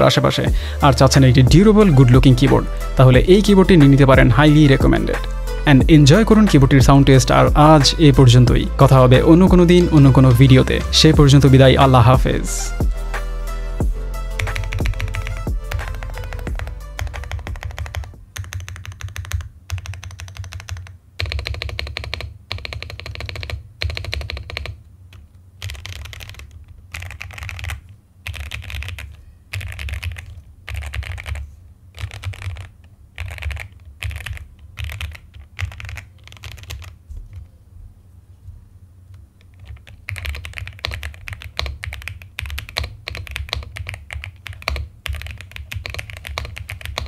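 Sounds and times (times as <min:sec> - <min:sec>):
mechanical keyboard keys clacking: 0:14.4 - 0:31.4, 0:32.0 - 0:37.5, 0:39.4 - 0:47.0.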